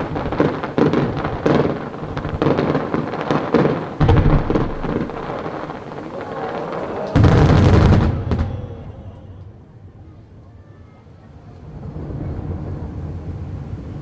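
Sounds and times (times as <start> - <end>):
firework boom and crackle: 0.0 - 10.0
low background din: 3.2 - 9.8.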